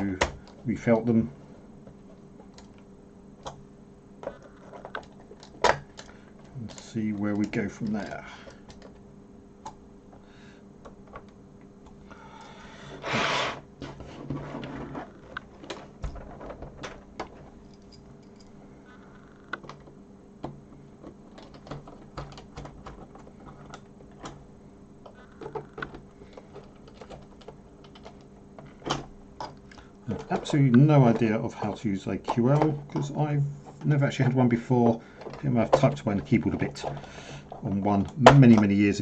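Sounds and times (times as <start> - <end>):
faint steady hum: 0.0 - 39.0
rustling scrape: 13.0 - 15.6.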